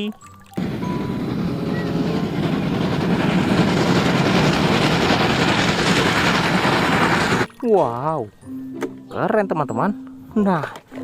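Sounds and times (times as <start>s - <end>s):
train rumbling on rails: 0.6s - 7.5s.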